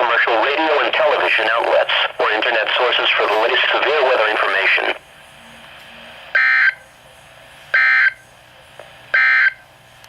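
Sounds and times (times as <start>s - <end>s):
receiver static hiss: 0.0s - 10.0s
digital data tone bursts: 6.4s - 6.8s, 7.8s - 8.2s, 9.2s - 9.6s.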